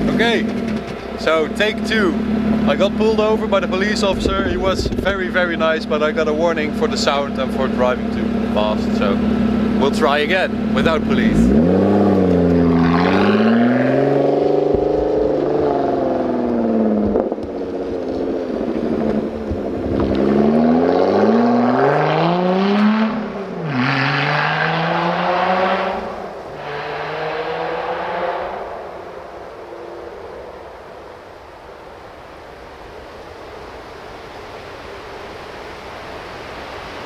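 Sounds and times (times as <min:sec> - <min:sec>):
car engine accelerating through gears: 0:06.3 - 0:31.2.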